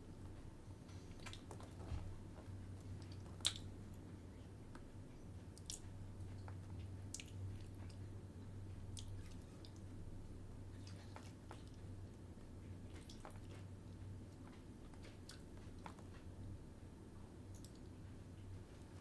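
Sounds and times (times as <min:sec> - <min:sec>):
low steady hum: 0:00.0 - 0:19.0
wet mouth clicks and smacks: 0:03.0 - 0:03.7, 0:05.6 - 0:05.9, 0:17.5 - 0:17.9.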